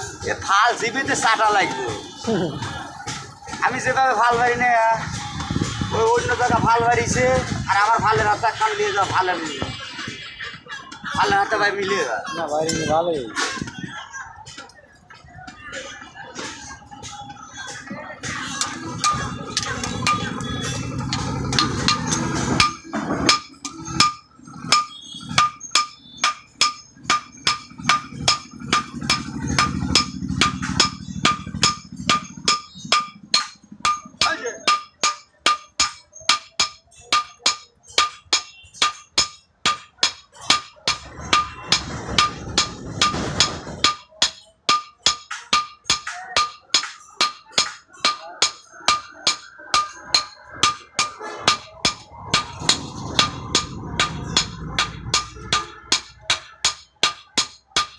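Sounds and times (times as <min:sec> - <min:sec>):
hammer striking metal on anvil: 0:18.5 - 0:57.9.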